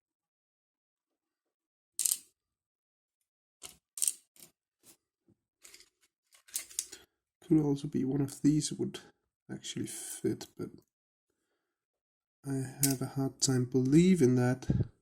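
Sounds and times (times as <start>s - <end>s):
metallic clicks of padlock pins: 2.0s - 2.3s, 6.4s - 7.0s, 12.8s - 13.1s.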